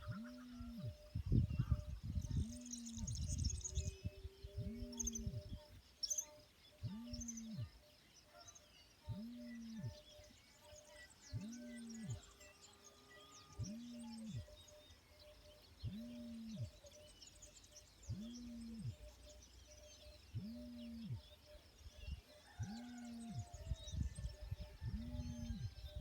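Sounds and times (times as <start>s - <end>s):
faint low rumble: 0.0s - 5.9s
small birds chirping: 0.0s - 26.0s.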